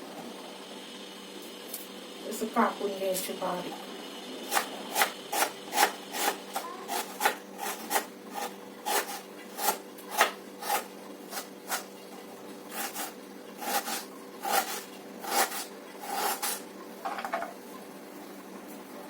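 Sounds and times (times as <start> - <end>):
knife chopping on cutting board: 4.5 - 11.9, 12.7 - 16.6.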